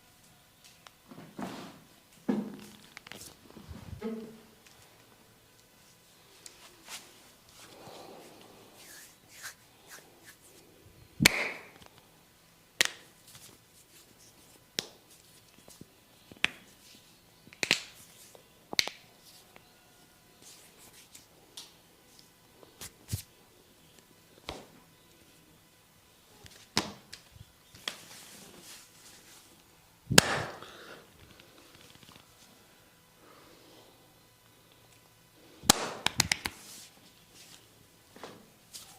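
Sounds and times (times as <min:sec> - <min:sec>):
hands slapping head: 0:11.2 - 0:11.8, 0:12.8 - 0:13.1, 0:14.8 - 0:15.0, 0:17.6 - 0:18.0, 0:30.1 - 0:30.6, 0:35.7 - 0:36.6.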